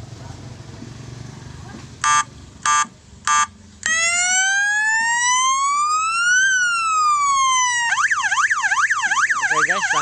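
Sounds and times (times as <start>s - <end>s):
electronic horn beeps: 2.0s - 3.6s
rising siren wail: 3.8s - 10.0s.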